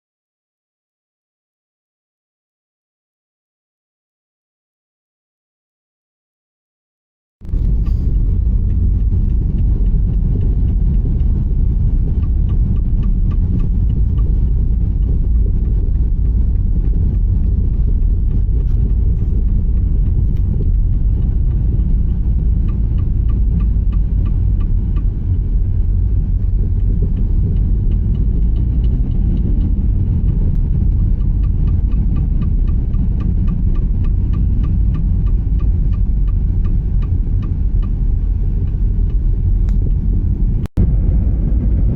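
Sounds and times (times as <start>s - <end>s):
car engine rumbling: 7.4s - 41.9s
front suspension knocking: 7.5s - 40.4s
faint fast ticking: 7.5s - 40.7s.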